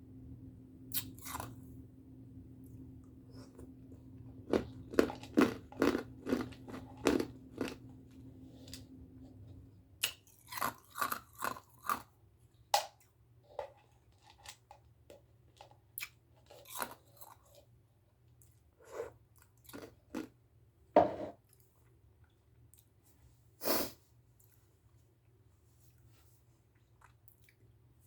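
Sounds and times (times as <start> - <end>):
ice being chewed: 0.9 - 1.6, 3.3 - 8.8, 10.0 - 12.1, 15.6 - 17.7, 18.4 - 20.3.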